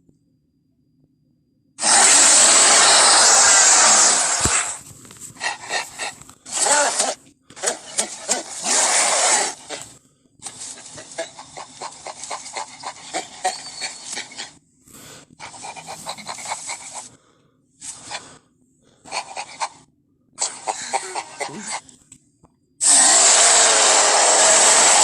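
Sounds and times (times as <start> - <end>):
gorilla breathy vocal bursts: 1.8 - 17.2, 17.8 - 18.4, 19.0 - 19.8, 20.4 - 21.9, 22.8 - 25.0
rapid short panting: 5.2 - 18.4, 19.0 - 21.9.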